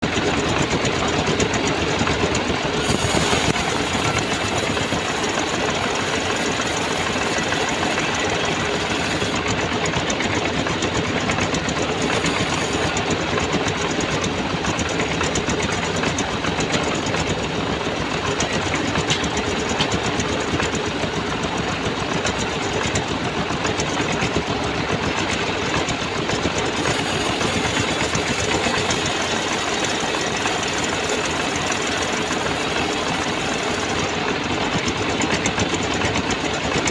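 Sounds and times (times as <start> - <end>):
band sawmill sawing log: 0.0 - 21.2, 23.5 - 36.9
bright hiss: 2.8 - 9.3, 26.8 - 34.0.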